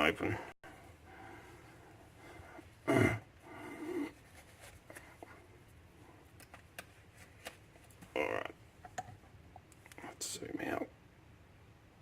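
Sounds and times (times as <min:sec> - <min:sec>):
person breathy vocal sound: 0:02.3 - 0:04.2.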